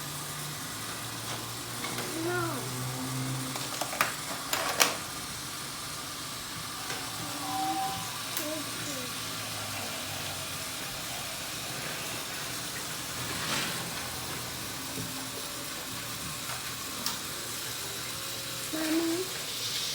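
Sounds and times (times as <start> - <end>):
toy train motor hum: 0.0 - 19.9
hiss: 5.9 - 12.6, 18.7 - 19.9.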